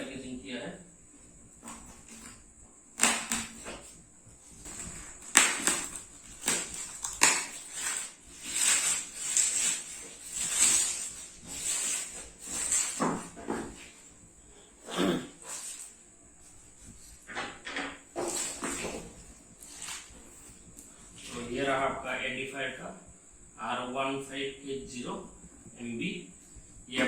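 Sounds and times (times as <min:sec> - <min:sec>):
packaging rustling and scraping: 0:01.2 - 0:21.8.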